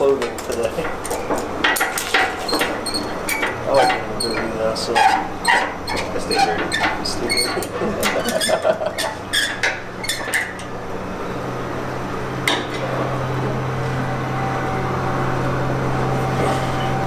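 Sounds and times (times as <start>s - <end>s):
low machine hum: 0.0s - 17.0s
metal tools clinking: 0.4s - 10.8s.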